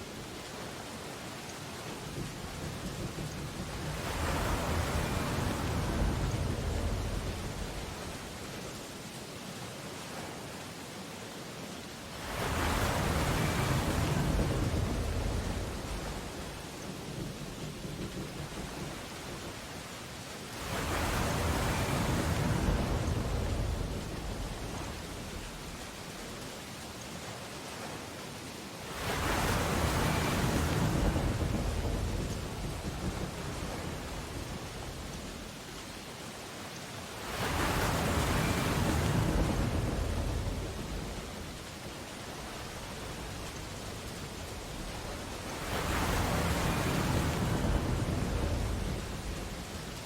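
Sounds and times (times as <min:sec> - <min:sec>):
rain falling: 0:00.0 - 0:50.0
surf crashing: 0:02.0 - 0:08.4, 0:12.2 - 0:16.8, 0:20.5 - 0:26.0, 0:28.9 - 0:35.4, 0:37.2 - 0:50.0
thunder rolling: 0:12.6 - 0:19.7, 0:29.0 - 0:35.5, 0:37.4 - 0:50.0.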